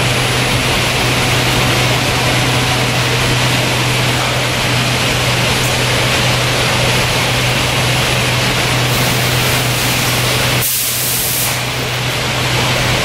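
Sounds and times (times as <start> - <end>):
packaging machinery humming: 0.0 - 13.0
short sharp air hiss: 10.6 - 11.6.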